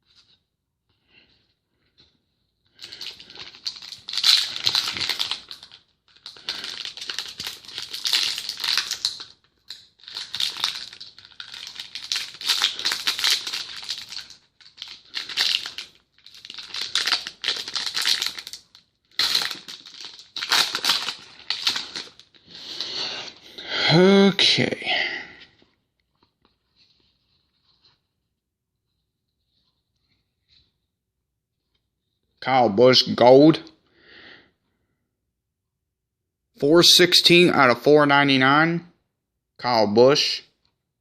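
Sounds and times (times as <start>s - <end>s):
plastic foil wrapper crinkling: 2.8s - 22.9s.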